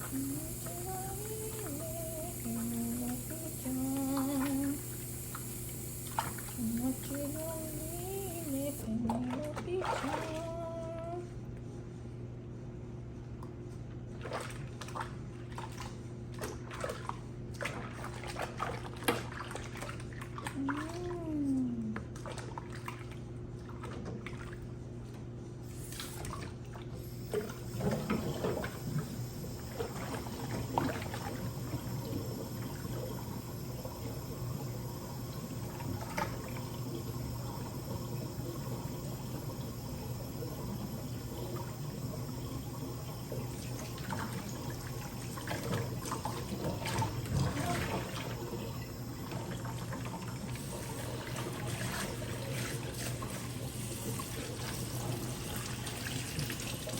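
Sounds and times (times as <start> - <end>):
shower water splashing: 0.0 - 8.9, 25.8 - 56.9
steady low hum: 0.0 - 13.3, 19.4 - 23.7, 25.5 - 52.9.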